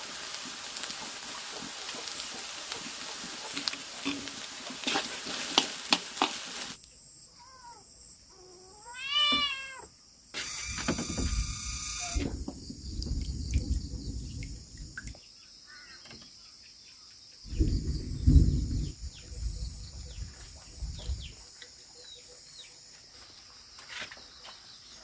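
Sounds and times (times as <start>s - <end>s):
food sizzling in a pan: 0.0s - 6.8s
outdoor hum: 10.3s - 15.1s
animal call: 11.2s - 12.2s.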